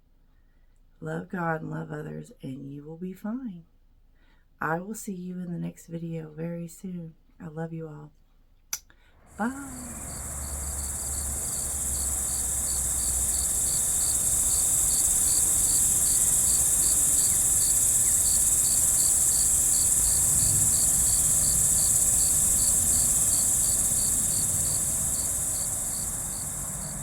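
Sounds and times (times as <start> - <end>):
insect chirp pulsing: 9.3 - 27.0
insects high-pitched shrill: 9.4 - 27.0.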